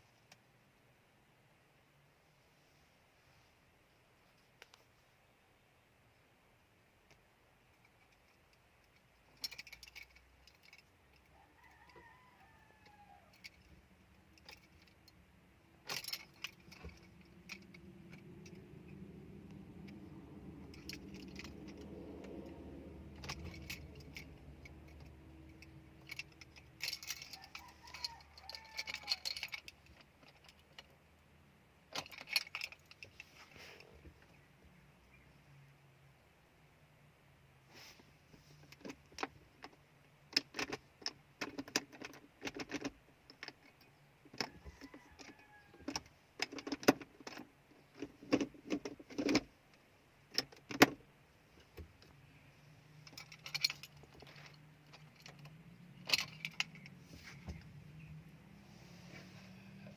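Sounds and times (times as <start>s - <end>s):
car keys jangling: 7.8s - 11.3s, 13.3s - 15.2s, 15.8s - 18.7s, 19.8s - 30.8s, 53.0s - 57.0s.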